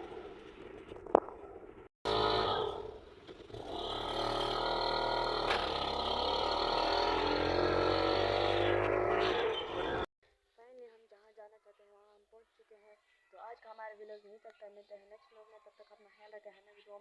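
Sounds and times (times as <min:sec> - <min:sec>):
vehicle engine accelerating: 0:02.1 - 0:10.1.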